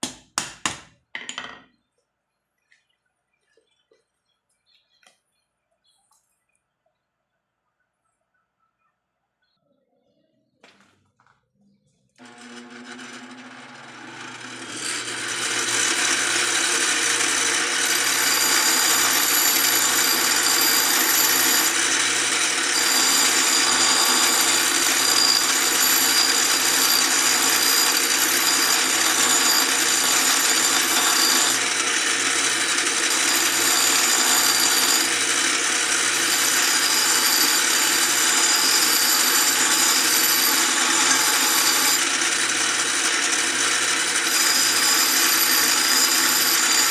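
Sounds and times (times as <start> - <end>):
electric grinder grinding steel: 12.2 - 46.9.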